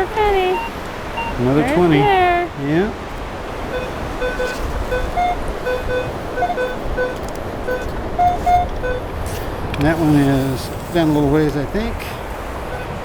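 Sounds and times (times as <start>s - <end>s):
surf: 0.0s - 13.0s
wind noise: 0.0s - 13.0s
metal detector beeps: 0.2s - 2.1s, 3.7s - 9.2s, 12.7s - 13.0s.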